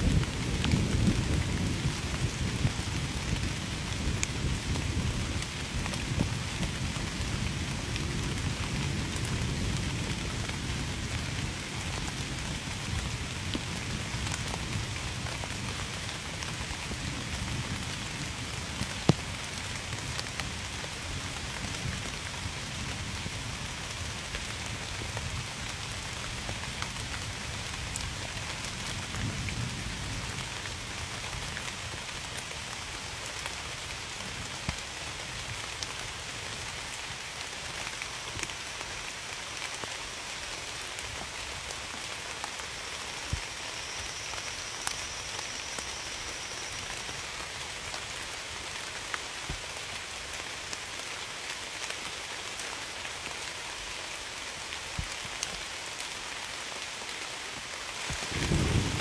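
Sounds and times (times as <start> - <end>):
steady rain falling: 0.0 - 59.0
distant thunder rumble: 58.2 - 59.0.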